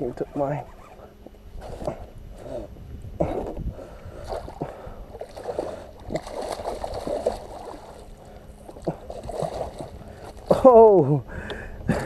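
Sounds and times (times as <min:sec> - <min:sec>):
water splashing against boat hull: 0:03.2 - 0:10.9.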